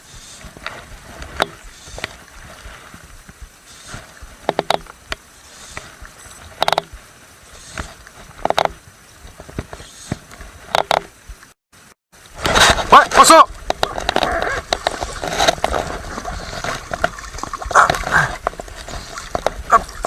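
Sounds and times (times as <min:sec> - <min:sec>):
faint steady hiss: 0:00.0 - 0:20.0
sharp hollow knocks: 0:04.4 - 0:05.2, 0:06.6 - 0:07.0.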